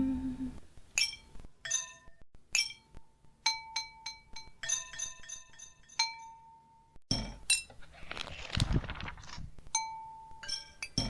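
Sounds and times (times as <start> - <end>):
kitchenware clinking rhythmically: 1.0 - 7.7.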